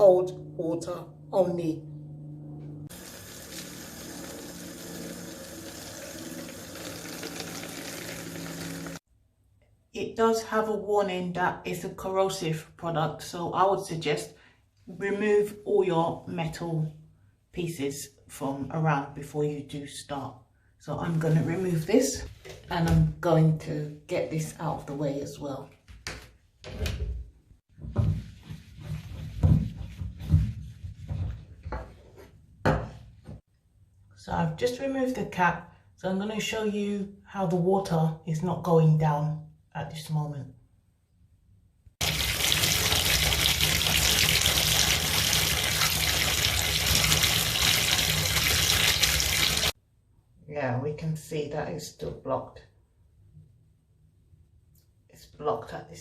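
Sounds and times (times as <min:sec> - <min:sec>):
tap water pouring into bottle: 0:02.9 - 0:09.0.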